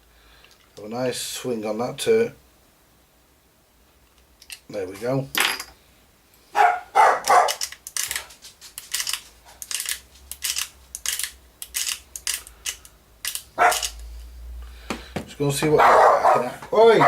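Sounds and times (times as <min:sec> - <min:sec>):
dog barking: 0:06.5 - 0:07.6, 0:13.6 - 0:13.9, 0:15.8 - 0:17.0.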